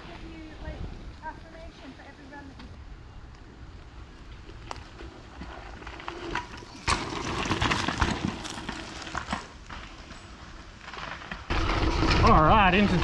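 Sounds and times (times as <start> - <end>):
bike tyres crunching on dirt: 0.0 - 13.0
bike rattling and clicking: 4.2 - 12.5.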